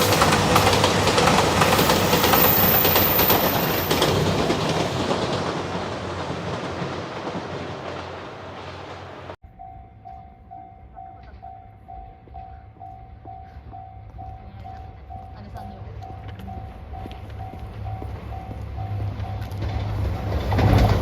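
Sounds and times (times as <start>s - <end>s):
wheels clicking over rail joints: 0.0s - 9.4s, 15.9s - 21.0s
diesel train passing: 0.0s - 21.0s
level crossing warning bell: 9.5s - 20.4s.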